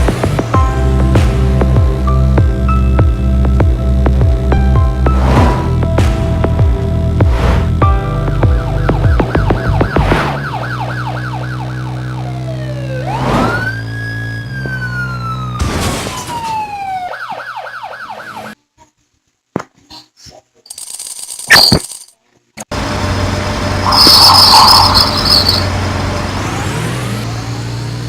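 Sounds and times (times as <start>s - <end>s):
emergency vehicle siren: 8.2s - 18.6s, 22.8s - 27.1s.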